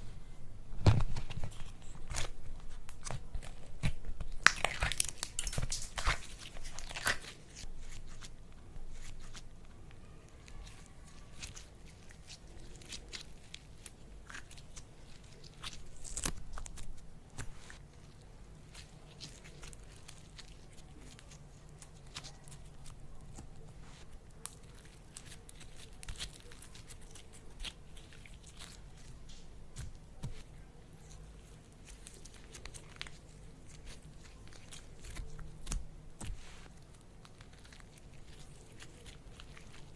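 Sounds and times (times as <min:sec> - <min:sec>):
slime crackling and clicking: 0:01.6 - 0:08.3, 0:24.3 - 0:39.9.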